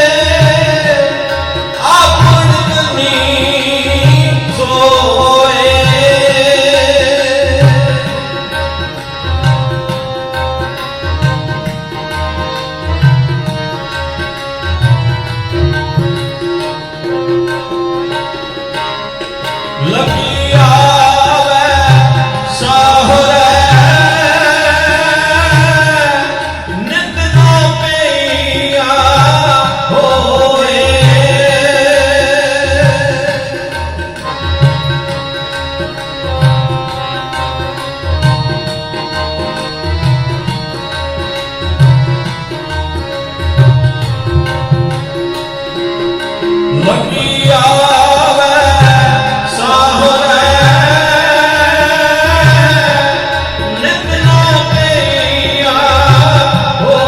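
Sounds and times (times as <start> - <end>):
hand drum rhythm: 7.5 - 20.9.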